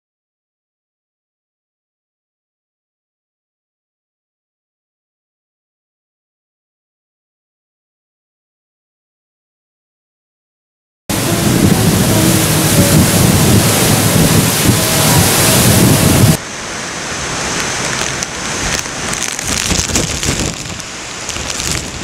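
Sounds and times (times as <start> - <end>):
strong wind and rain: 11.1 - 22.0.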